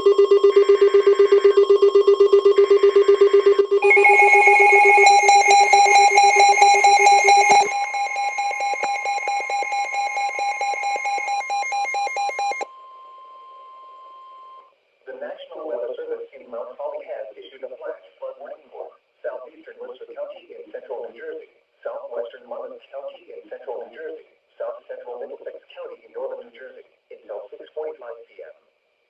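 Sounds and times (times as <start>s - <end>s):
pulsing electronic alert tones: 0.0s - 12.6s
steady tone: 3.3s - 12.6s.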